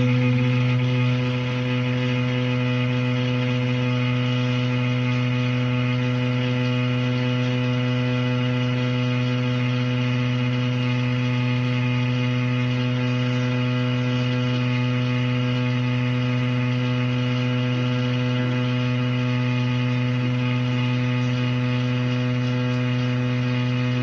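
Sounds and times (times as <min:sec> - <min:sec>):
shower plumbing droning hum: 0:00.0 - 0:24.0.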